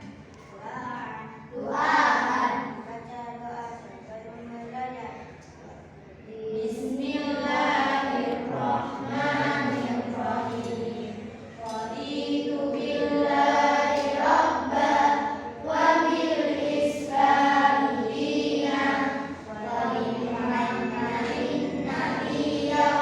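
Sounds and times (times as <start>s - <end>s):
group of voices singing: 6.6s - 23.0s.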